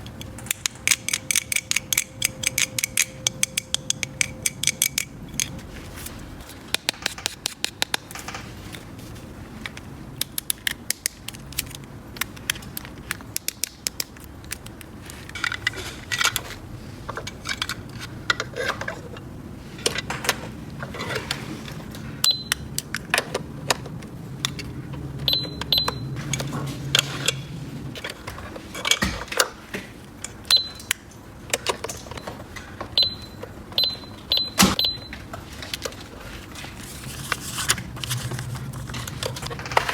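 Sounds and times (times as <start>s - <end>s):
plastic toy pieces clicking: 0.3s - 5.6s, 10.2s - 15.6s
short high beeps: 25.3s - 26.1s, 33.0s - 35.1s.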